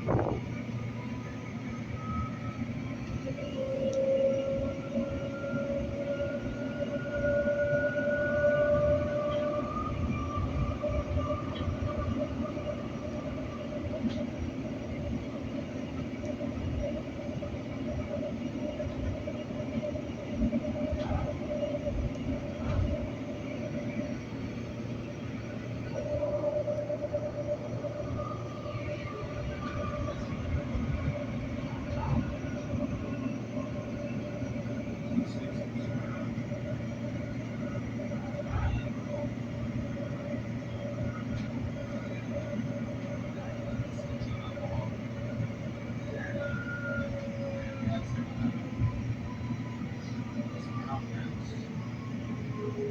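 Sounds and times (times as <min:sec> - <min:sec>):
light-rail train rumbling: 0:00.0 - 0:52.9
steady whine: 0:00.0 - 0:52.9.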